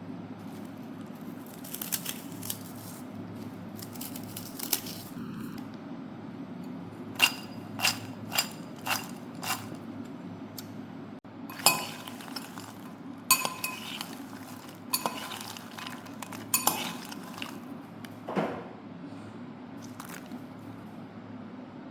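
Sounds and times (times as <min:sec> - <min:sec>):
hard objects clinking on dish: 0:07.2 - 0:09.8, 0:11.5 - 0:17.7.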